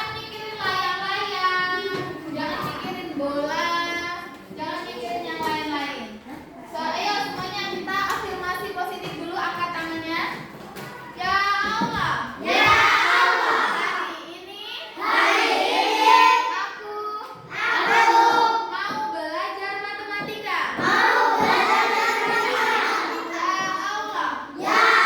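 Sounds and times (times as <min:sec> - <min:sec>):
children singing: 0:12.4 - 0:14.1, 0:15.0 - 0:16.6, 0:17.5 - 0:18.7, 0:20.8 - 0:25.0.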